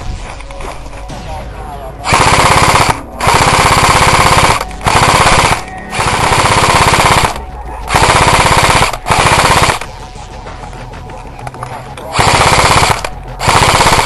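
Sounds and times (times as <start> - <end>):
airsoft gun automatic bursts: 2.0 - 9.9, 12.1 - 14.0.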